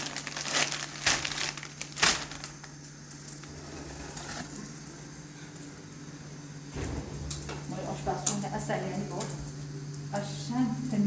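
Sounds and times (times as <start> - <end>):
crinkling and rustling: 0.0 - 4.7
low hum: 6.4 - 9.6.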